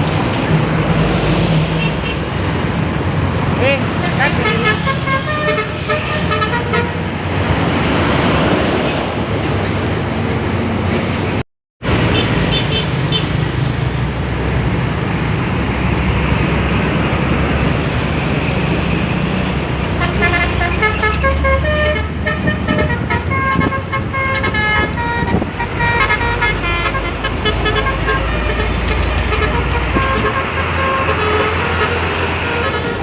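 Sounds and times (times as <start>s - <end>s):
bus engine and road noise: 0.0s - 33.0s
bus horn playing melody: 4.3s - 7.1s, 19.9s - 33.0s.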